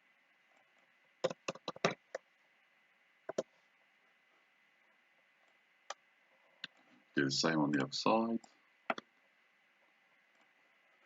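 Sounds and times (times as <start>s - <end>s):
faint steady hiss: 0.0s - 11.0s
computer mouse clicking: 0.5s - 2.3s, 3.3s - 3.5s, 7.8s - 9.1s.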